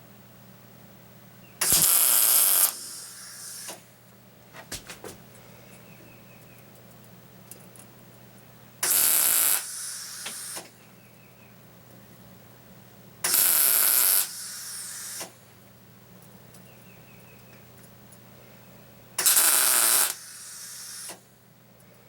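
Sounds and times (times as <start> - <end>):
welding arc hissing: 1.6 - 3.9, 8.8 - 10.7, 13.3 - 15.4, 19.2 - 21.2.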